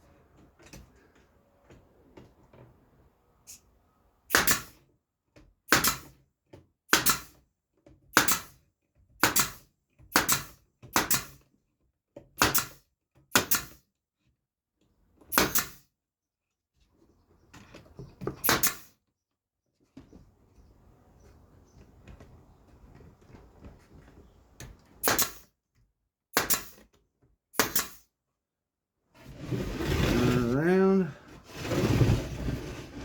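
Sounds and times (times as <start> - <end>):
nails driven into wood: 4.3 - 4.9, 5.7 - 6.3, 6.9 - 7.4, 8.1 - 11.5, 12.3 - 13.8, 15.2 - 15.9, 18.3 - 19.0, 24.6 - 25.6, 26.3 - 27.0, 27.6 - 28.1.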